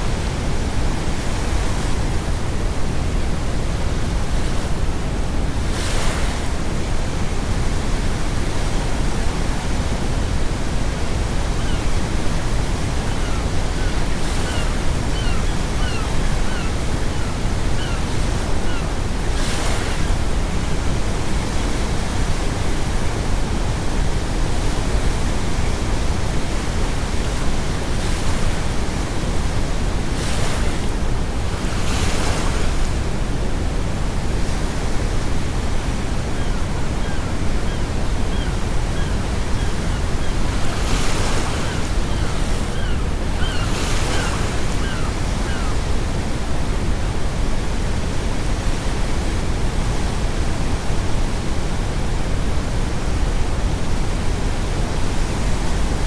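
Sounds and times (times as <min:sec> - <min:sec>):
gulls calling: 0:11.4 - 0:19.0, 0:36.2 - 0:45.9
ocean waves breaking: 0:28.0 - 0:46.3.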